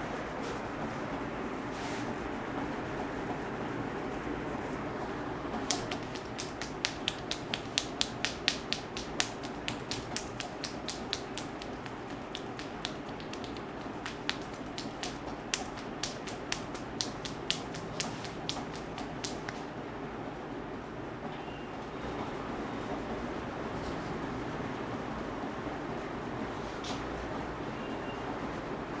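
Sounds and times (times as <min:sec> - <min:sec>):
hands clicking and snapping: 0:05.6 - 0:19.7.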